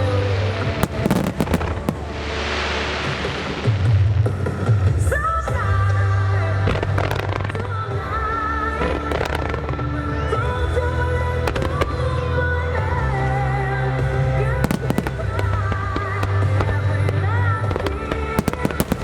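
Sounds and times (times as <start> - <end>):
sharp bangs: 0.8 - 2.4, 14.7 - 15.4, 18.4 - 19.0
aerial fireworks bursting: 0.8 - 3.9, 14.6 - 15.6, 18.4 - 19.0.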